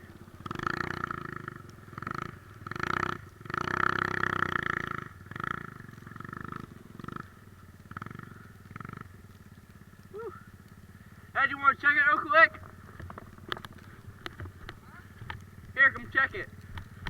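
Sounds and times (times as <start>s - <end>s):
engine revving: 0.0s - 9.4s.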